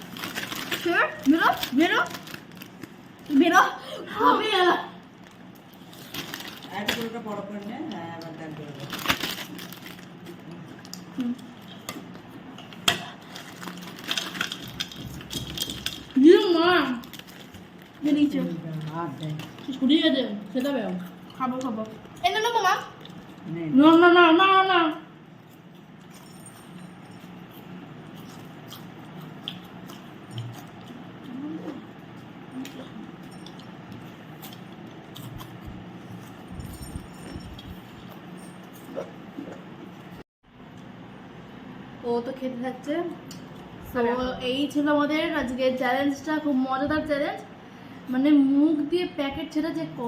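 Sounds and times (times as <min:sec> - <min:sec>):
foil snack packet crinkling: 0:00.0 - 0:03.4, 0:05.2 - 0:10.3, 0:13.2 - 0:16.2, 0:17.0 - 0:19.8
steady low hum: 0:00.0 - 0:50.0.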